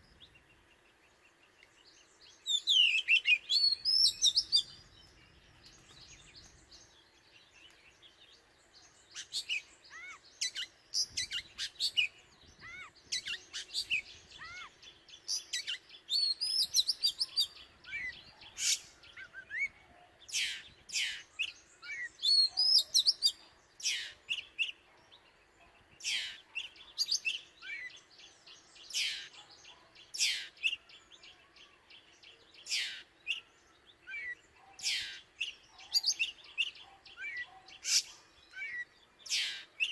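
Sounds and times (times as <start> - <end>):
bird singing whistles and chirps: 1.5 - 8.2, 8.8 - 25.3.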